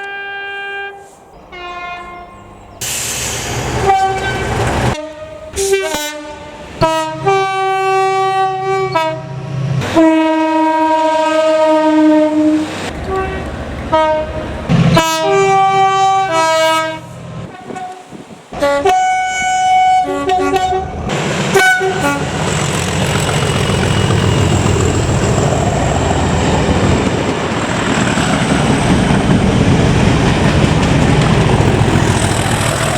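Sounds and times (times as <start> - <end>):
train horn: 0.0 - 2.5, 3.8 - 22.4
train rumbling: 0.0 - 32.9.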